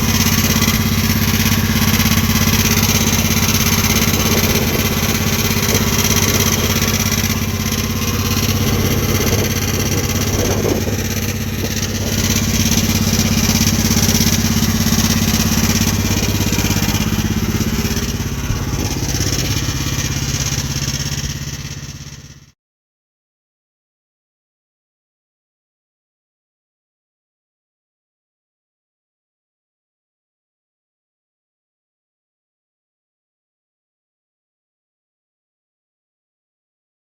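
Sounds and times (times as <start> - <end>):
skid steer engine running: 0.0 - 22.6.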